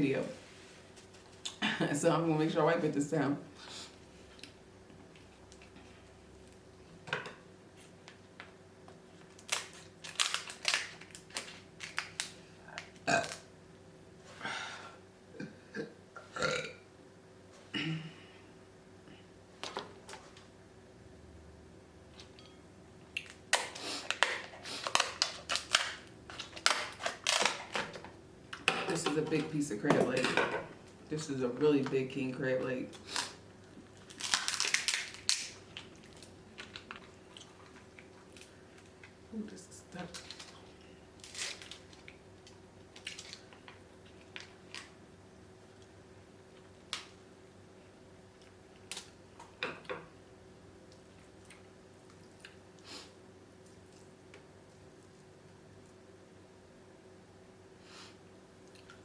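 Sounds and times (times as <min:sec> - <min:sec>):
crab shell cracking: 0:09.2 - 0:13.4, 0:34.0 - 0:37.5.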